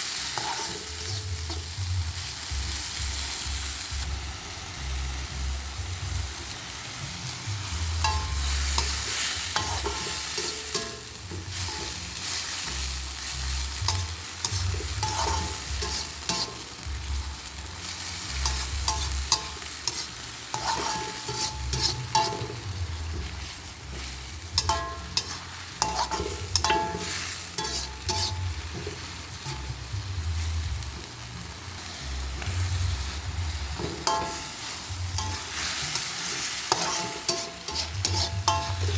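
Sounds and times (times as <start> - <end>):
greens sizzling in a pan: 0.0 - 38.9
spatula scraping and knocking pan: 18.4 - 22.6, 23.2 - 29.7, 35.2 - 38.9.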